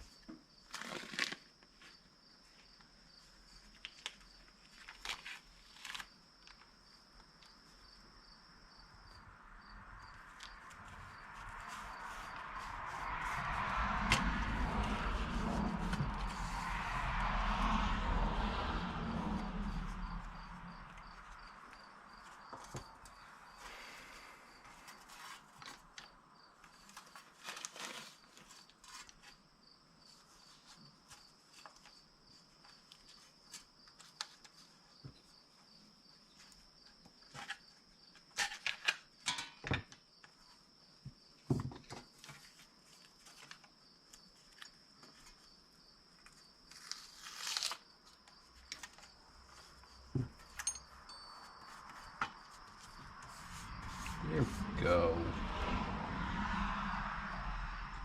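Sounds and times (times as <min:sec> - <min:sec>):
tape crinkling and tearing: 0:00.7 - 0:01.6, 0:03.8 - 0:06.7, 0:26.8 - 0:29.3, 0:46.7 - 0:49.5.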